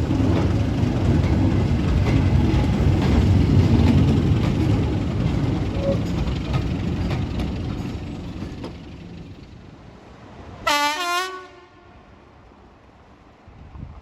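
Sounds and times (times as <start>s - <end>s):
train rumbling and clattering: 0.0s - 11.4s
locomotive horn blast: 10.6s - 12.1s.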